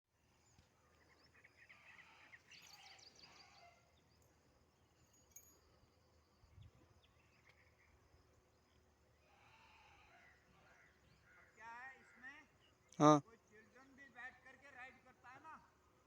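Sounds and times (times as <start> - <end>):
faint outdoor background noise: 0.0 - 16.0.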